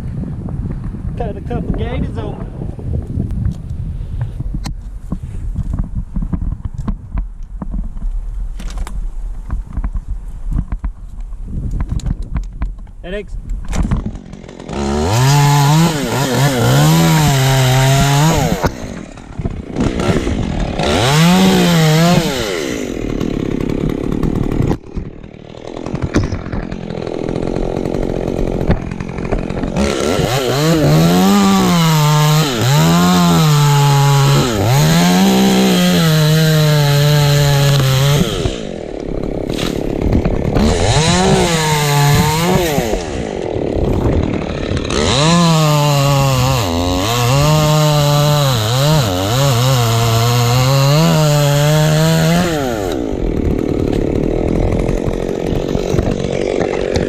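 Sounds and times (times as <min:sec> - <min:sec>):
chainsaw cutting wood: 0:13.7 - 0:57.0.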